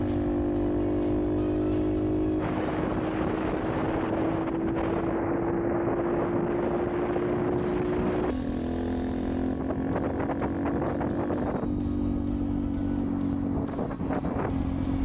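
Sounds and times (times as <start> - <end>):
motorcycle engine running: 0.0 - 15.0
wind noise: 2.3 - 8.4, 9.6 - 15.0.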